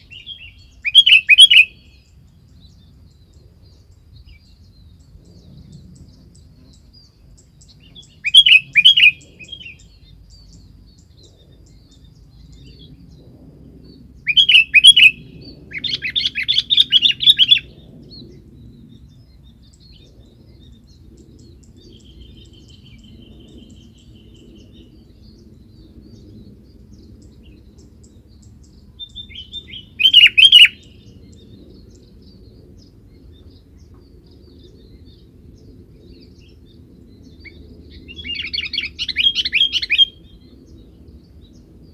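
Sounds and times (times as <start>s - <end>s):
bulbul chattering calls: 0.0s - 2.0s, 7.8s - 10.6s, 14.3s - 17.8s, 29.0s - 32.1s, 36.2s - 40.8s.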